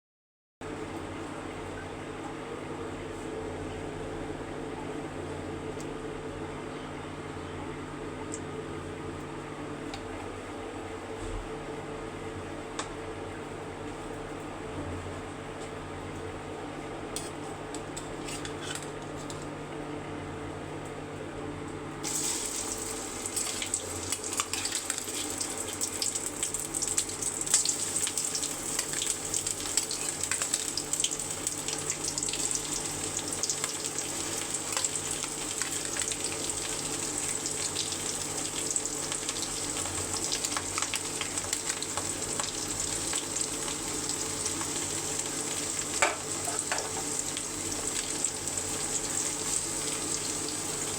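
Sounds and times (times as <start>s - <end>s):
oil sizzling in cooking pot: 22.0s - 50.9s.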